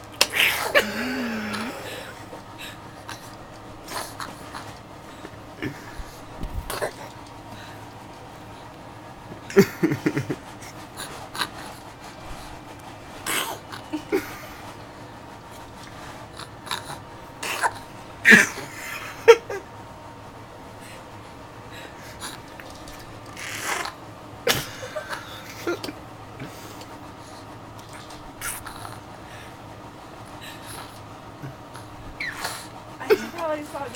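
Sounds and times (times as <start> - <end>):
dog sneezing and snorting: 13.2 - 14.6.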